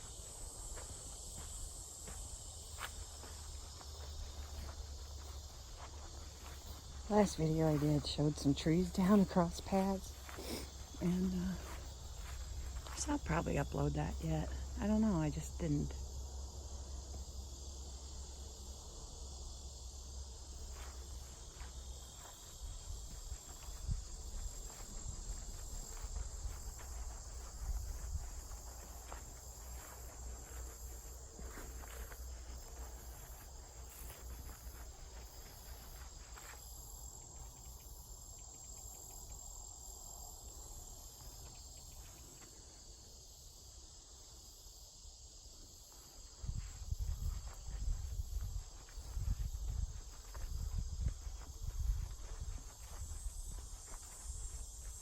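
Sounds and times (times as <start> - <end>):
insect chorus droning: 0.0 - 55.0
wind rumble on microphone: 46.4 - 53.7.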